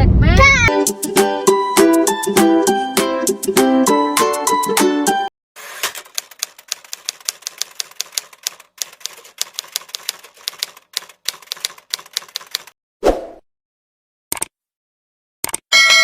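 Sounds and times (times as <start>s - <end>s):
typewriter keys clacking: 5.6s - 12.7s.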